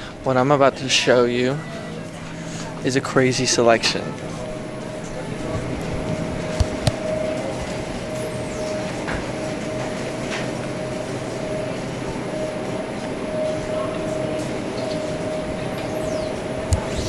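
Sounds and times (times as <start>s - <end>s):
constant tone: 1.2s - 17.0s
mechanical rumble and hum: 1.3s - 10.0s, 14.6s - 17.0s.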